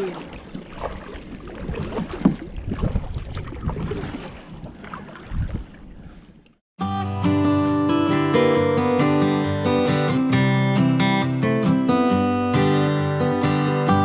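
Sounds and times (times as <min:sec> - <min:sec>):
wind on microphone: 0:00.9 - 0:06.0.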